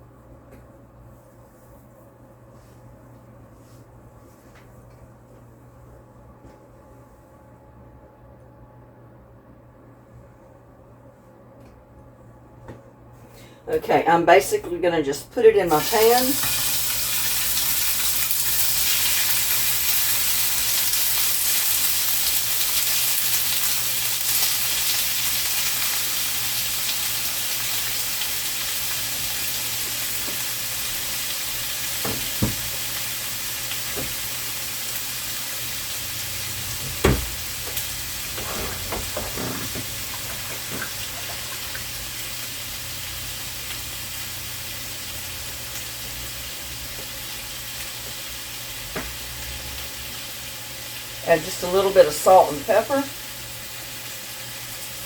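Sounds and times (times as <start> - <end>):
chicken sizzling in oil: 15.7 - 55.0.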